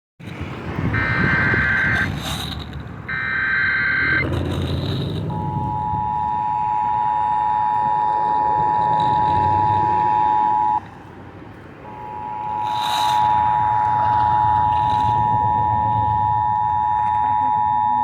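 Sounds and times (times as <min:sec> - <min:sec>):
two-tone alert signal: 0:01.0 - 0:02.1, 0:05.3 - 0:10.8, 0:11.8 - 0:18.0
radio static: 0:01.0 - 0:02.3
data burst screech: 0:05.3 - 0:10.8, 0:11.9 - 0:18.0.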